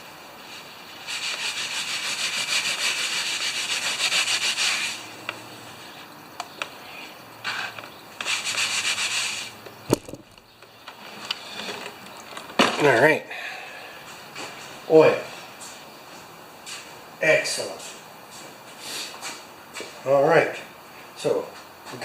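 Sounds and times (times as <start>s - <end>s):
cloth rubbing back and forth: 0.4s - 6.0s
sharp knock: 9.9s - 10.4s.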